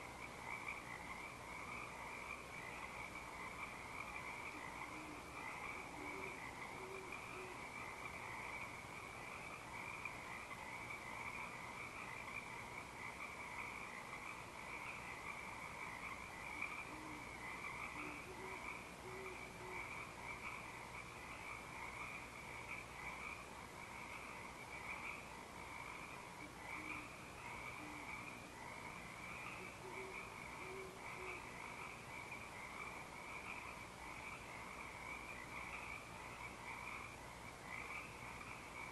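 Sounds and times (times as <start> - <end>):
frog chorus trilling: 0.0 - 38.9
owls hooting: 4.5 - 7.7, 16.6 - 20.0, 26.4 - 28.3, 29.4 - 31.5.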